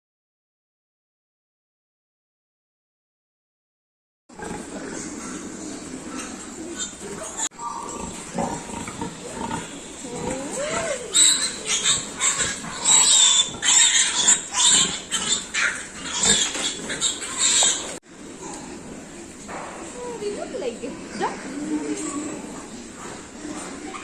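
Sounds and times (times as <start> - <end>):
pigs squealing: 4.3 - 18.9, 20.9 - 24.0.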